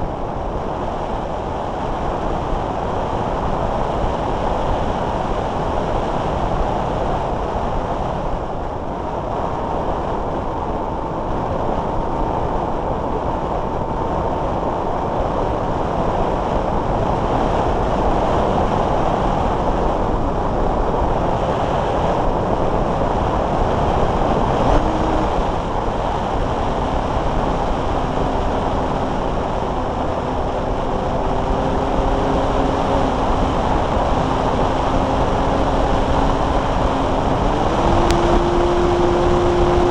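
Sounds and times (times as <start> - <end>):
wind noise: 0.0 - 39.9
faint thin whine: 17.2 - 39.9.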